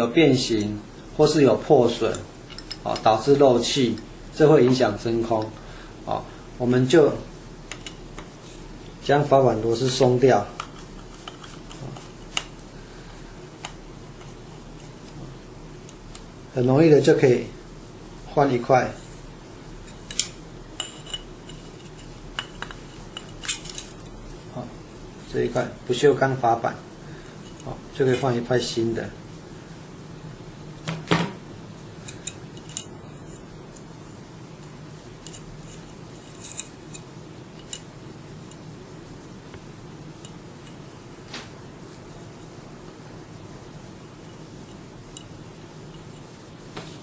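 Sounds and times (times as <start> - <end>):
steady low hum: 0.0 - 47.0
metal parts clicking and clinking: 2.1 - 3.1, 19.9 - 24.0, 32.1 - 32.9, 35.2 - 37.0.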